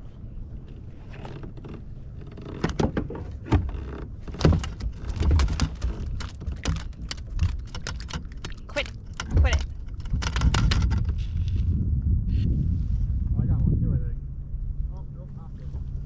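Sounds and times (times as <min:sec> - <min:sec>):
gear knocking and clattering: 0:01.1 - 0:11.3
low rumble: 0:04.1 - 0:16.0.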